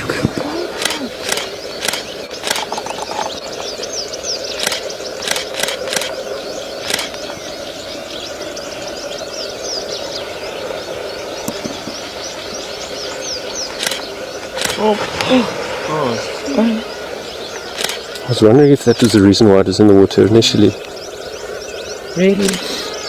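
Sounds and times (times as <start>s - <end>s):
small birds chirping: 0.0s - 23.0s
steady outdoor hum: 0.0s - 23.0s
sharp clicks: 0.2s - 3.4s, 4.6s - 6.2s, 6.8s - 7.3s, 13.7s - 15.4s, 17.6s - 19.3s, 22.4s - 22.7s.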